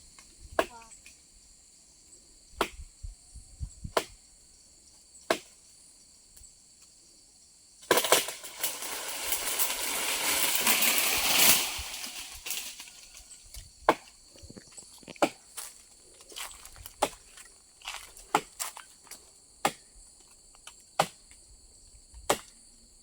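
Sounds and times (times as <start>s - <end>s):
insects buzzing: 0.0s - 23.0s
chopping strikes on wood: 2.6s - 2.8s, 3.9s - 4.2s, 5.3s - 5.5s, 13.9s - 14.1s, 18.3s - 18.7s, 19.6s - 19.8s, 21.0s - 21.2s, 22.3s - 22.6s
leafy branches crashing down: 7.9s - 13.4s.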